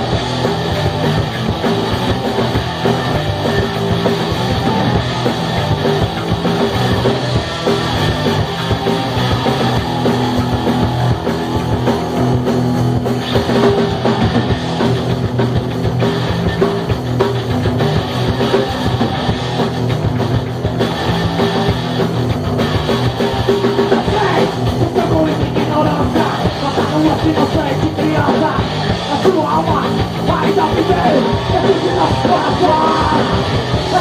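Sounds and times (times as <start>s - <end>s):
loud punk rock music: 0.0s - 34.0s.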